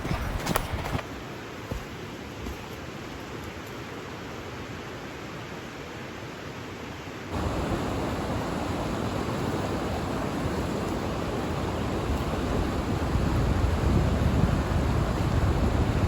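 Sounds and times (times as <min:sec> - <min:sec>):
river water rushing over rapids: 0:04.1 - 0:16.0
wind buffeting microphone: 0:07.3 - 0:16.0.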